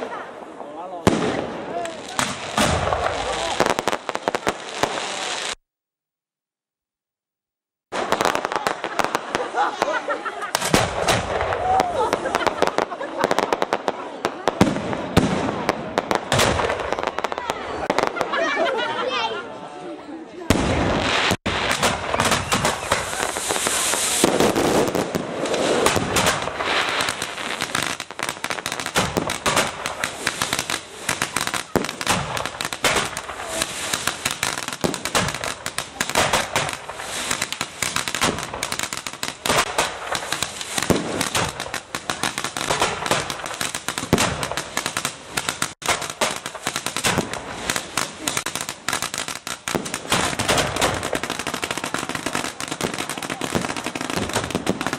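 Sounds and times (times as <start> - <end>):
fireworks bangs and crackling: 0.0 - 5.6, 7.9 - 18.9, 20.4 - 54.9
high hiss: 22.8 - 24.3.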